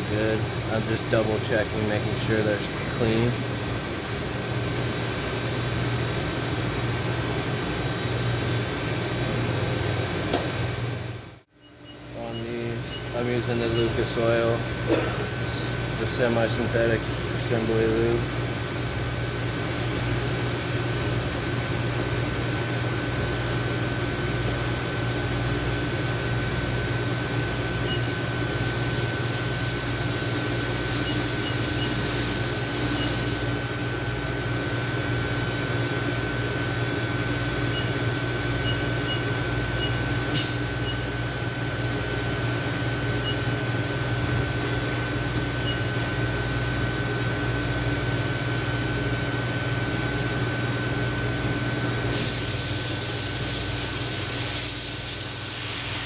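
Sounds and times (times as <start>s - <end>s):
ventilation hum: 0.0s - 56.0s
hiss: 28.5s - 33.5s, 52.1s - 56.0s.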